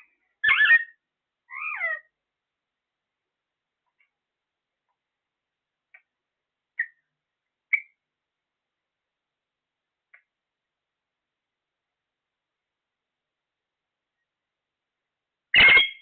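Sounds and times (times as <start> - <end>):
parrot chirping sharply: 0.4 - 2.1, 15.5 - 16.0.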